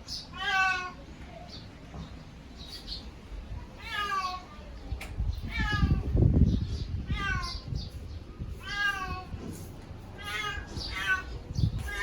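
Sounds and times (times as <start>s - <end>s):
cat meowing: 0.3s - 1.0s, 3.8s - 4.6s, 5.4s - 6.1s, 7.1s - 7.7s, 8.6s - 9.4s, 10.2s - 12.0s.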